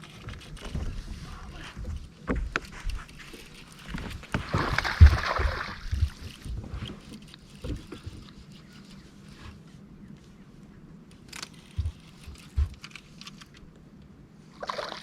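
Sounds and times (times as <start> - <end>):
knocks and bumps on boat: 4.0 - 7.0.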